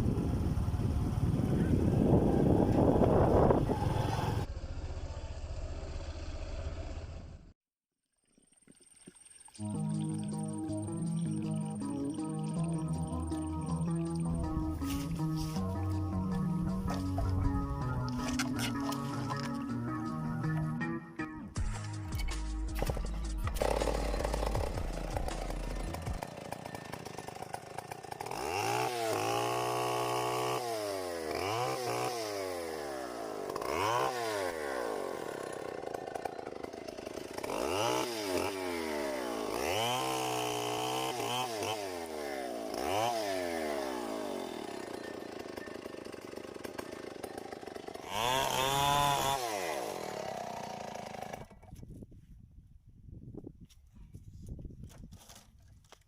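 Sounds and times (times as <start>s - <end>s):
chainsaw revving while cutting wood: 23.5s - 51.7s.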